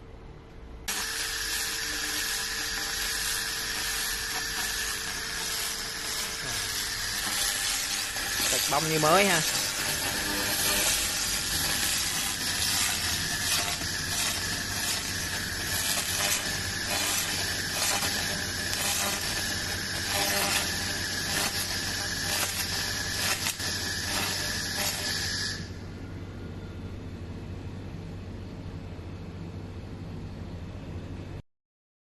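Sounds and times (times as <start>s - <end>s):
low machine hum: 0.0s - 31.4s
laser hissing and crackling: 0.9s - 25.8s.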